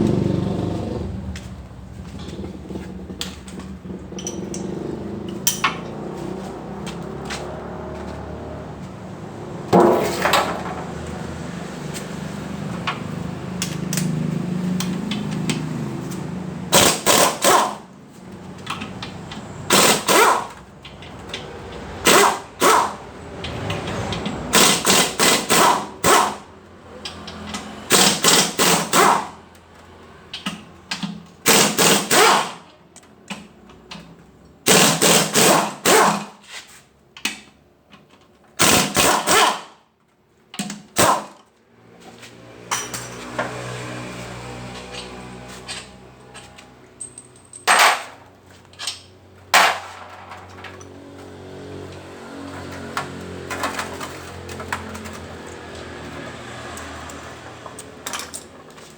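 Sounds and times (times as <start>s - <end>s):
impact wrench rattling: 2.2s - 6.0s, 24.5s - 26.4s.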